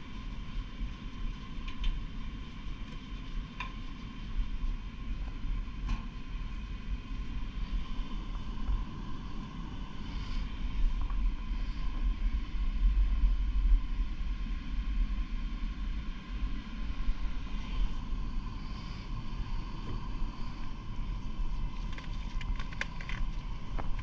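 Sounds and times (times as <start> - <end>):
machine rumbling with whine: 0.0 - 24.0.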